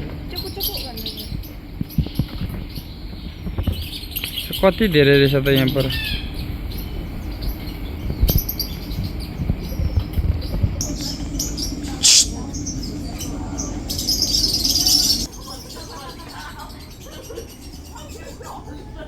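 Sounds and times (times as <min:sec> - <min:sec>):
small birds chirping: 0:00.0 - 0:19.0
loud bird call: 0:11.2 - 0:15.3.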